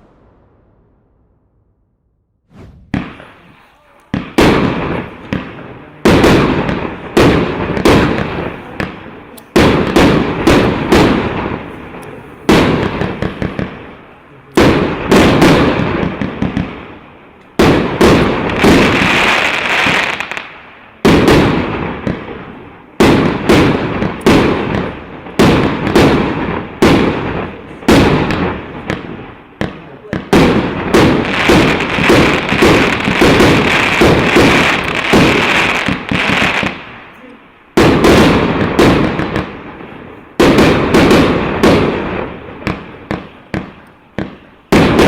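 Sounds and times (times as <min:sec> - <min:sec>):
fireworks bangs: 0:00.0 - 0:45.0
fireworks hissing: 0:02.4 - 0:21.2
fireworks crackle: 0:02.4 - 0:45.0.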